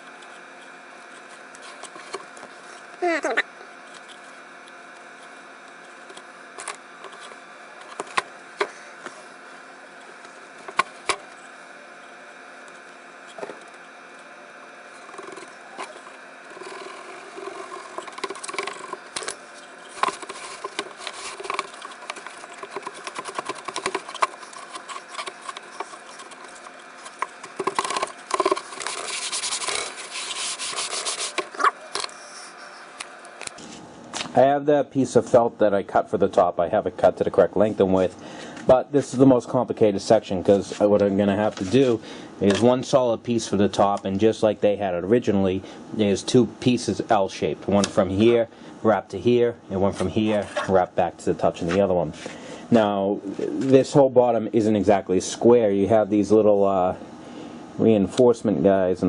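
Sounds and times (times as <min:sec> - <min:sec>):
hands rubbing on wooden toolbox: 0:20.0 - 0:31.5.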